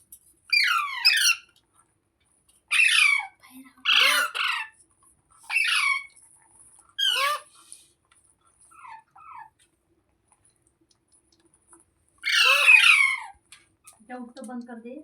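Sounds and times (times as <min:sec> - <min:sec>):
parakeet screeching: 0:00.5 - 0:01.5, 0:02.7 - 0:04.8, 0:05.4 - 0:06.1, 0:07.0 - 0:07.5, 0:12.2 - 0:13.4.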